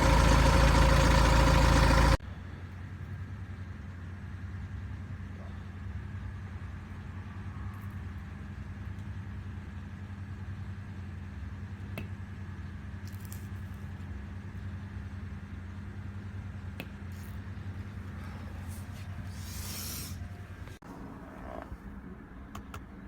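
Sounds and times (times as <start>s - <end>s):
diesel engine idling: 0.0s - 2.6s.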